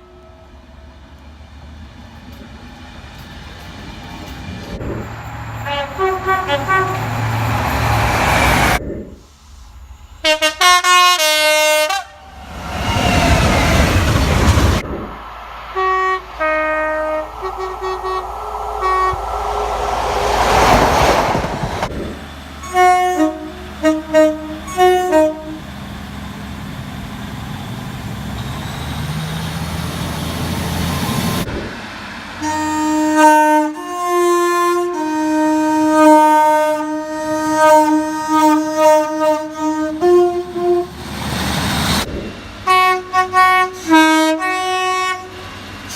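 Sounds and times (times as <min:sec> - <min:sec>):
trains passing rushing noise: 0:00.0 - 0:45.9
train horn blasts: 0:05.6 - 0:07.6, 0:10.2 - 0:12.4, 0:15.8 - 0:19.9, 0:22.6 - 0:25.7, 0:32.4 - 0:41.0, 0:42.6 - 0:45.5.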